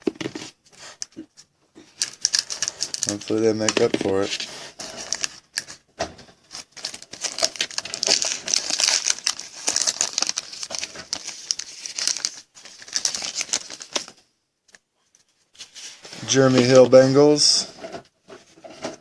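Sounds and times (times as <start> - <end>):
plastic wrapper crinkling and tearing: 1.9 - 5.8, 6.5 - 14.1.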